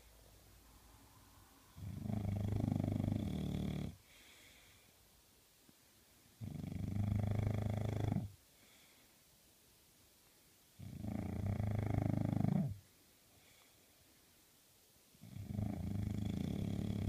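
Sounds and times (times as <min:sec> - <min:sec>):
puppy snoring: 0:01.7 - 0:04.0, 0:06.4 - 0:08.4, 0:10.8 - 0:12.8, 0:15.2 - 0:17.0.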